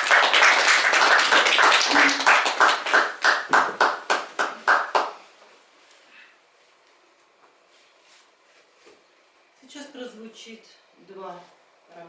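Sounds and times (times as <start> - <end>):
audience applauding: 0.0 - 5.2.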